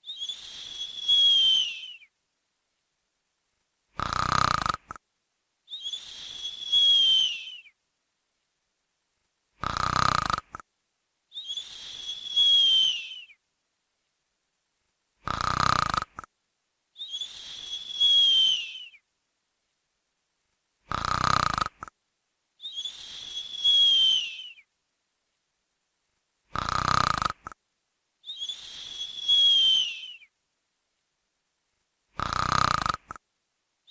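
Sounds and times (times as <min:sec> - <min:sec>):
snoring with a whistle: 0:00.0 - 0:02.1, 0:04.0 - 0:05.0, 0:05.7 - 0:07.8, 0:09.6 - 0:10.6, 0:11.4 - 0:13.4, 0:15.2 - 0:16.3, 0:17.0 - 0:19.0, 0:20.9 - 0:21.9, 0:22.6 - 0:24.7, 0:26.5 - 0:27.6, 0:28.3 - 0:30.3, 0:32.1 - 0:33.2.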